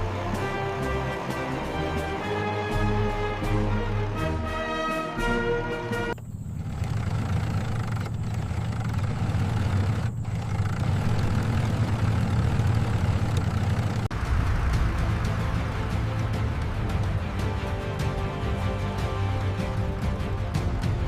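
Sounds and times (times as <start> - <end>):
music: 0.0 - 6.2, 14.1 - 21.0
engine idling: 6.0 - 21.0.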